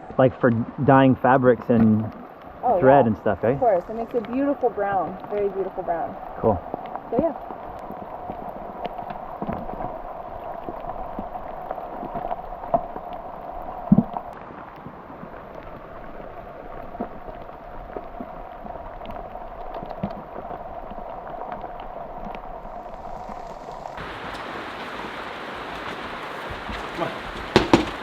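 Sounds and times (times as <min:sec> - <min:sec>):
heavy rain: 0:00.0 - 0:28.0
loud thump: 0:27.5 - 0:28.0.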